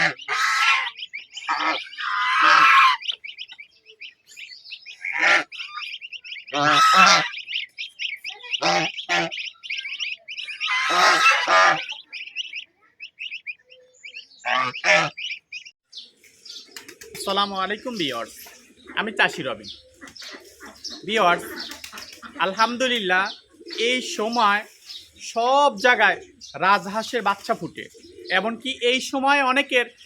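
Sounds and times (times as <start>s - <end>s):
harsh goose calls: 0.0s - 3.7s, 4.9s - 13.7s, 14.4s - 15.7s, 18.0s - 24.8s
goslings peeping: 0.0s - 30.0s.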